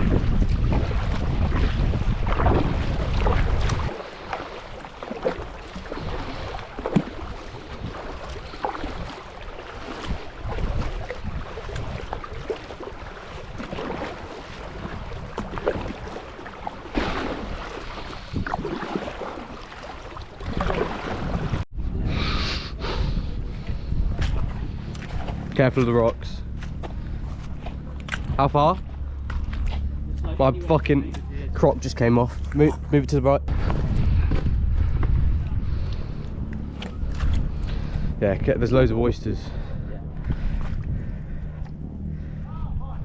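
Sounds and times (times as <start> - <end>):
kayak paddles splashing: 0.0 - 21.7, 22.5 - 43.0
wind buffeting microphone: 0.0 - 43.0
water drips: 3.2 - 20.8.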